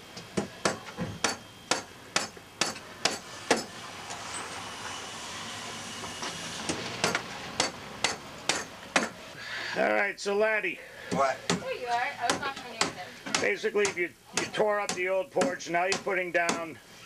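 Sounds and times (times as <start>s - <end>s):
hammer driving nails into wood: 6.7s - 9.2s.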